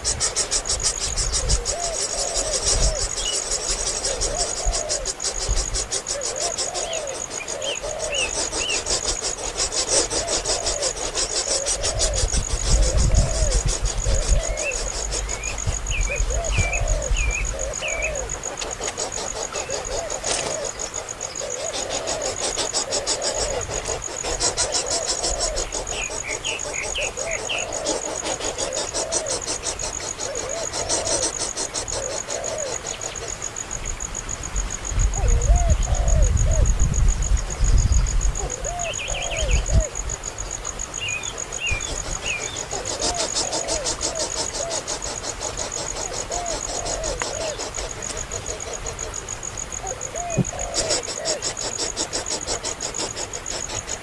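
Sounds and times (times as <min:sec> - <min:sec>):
high insect trill: 0:00.0 - 0:54.0.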